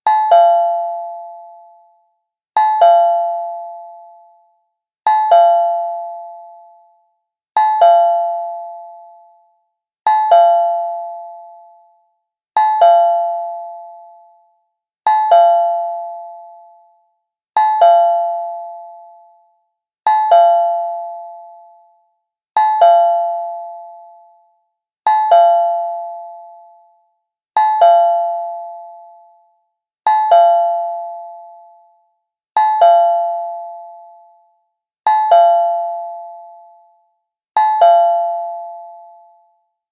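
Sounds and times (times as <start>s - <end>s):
two-note doorbell chime: 0.1s - 1.7s, 2.6s - 4.0s, 5.1s - 6.7s, 7.6s - 9.2s, 12.6s - 14.2s, 17.6s - 19.2s, 22.6s - 24.2s, 27.6s - 29.3s, 32.6s - 34.3s, 35.1s - 36.9s, 37.6s - 39.5s.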